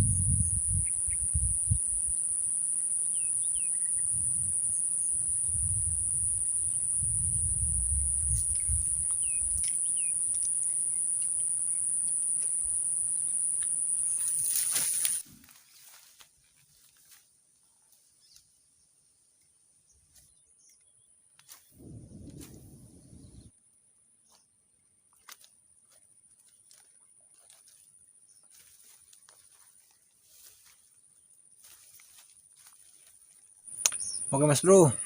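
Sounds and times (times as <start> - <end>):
insects shrilling: 0.4 - 15.2, 31.6 - 35.0
faint bird chirps: 2.8 - 4.2, 8.4 - 11.8, 33.8 - 35.0.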